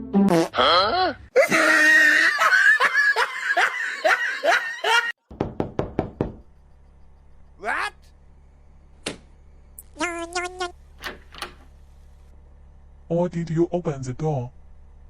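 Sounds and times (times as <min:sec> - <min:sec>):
person laughing hard: 0:01.4 - 0:05.2.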